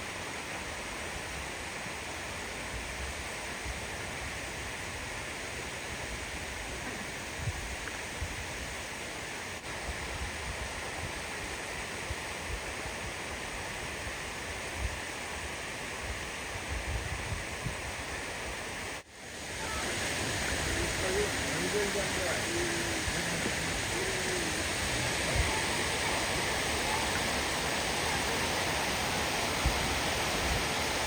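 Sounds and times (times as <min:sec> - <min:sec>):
waterfall rushing: 0:18.7 - 0:31.0.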